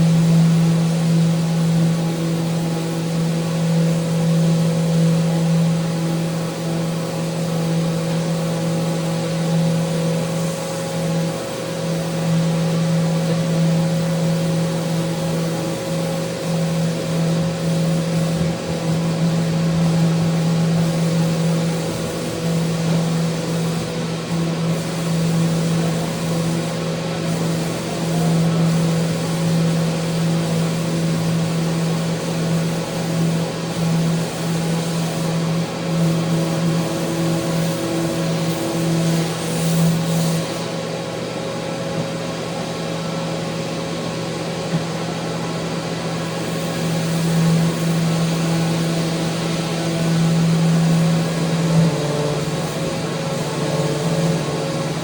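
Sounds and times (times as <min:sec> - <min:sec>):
power sander running: 0:45.7 - 0:55.0.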